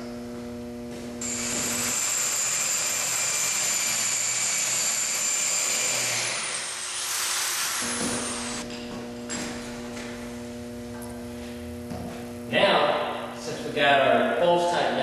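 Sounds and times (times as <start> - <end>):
power drill whining into steel: 1.2 - 8.7.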